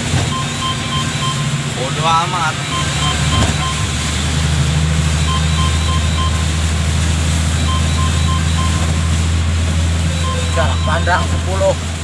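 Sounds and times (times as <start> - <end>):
heavy wind-driven rain: 0.0 - 12.0
low vehicle hum: 0.0 - 12.0
short high electronic beeps: 0.3 - 1.5, 2.6 - 4.0, 5.2 - 6.5, 7.6 - 9.2, 10.0 - 11.5.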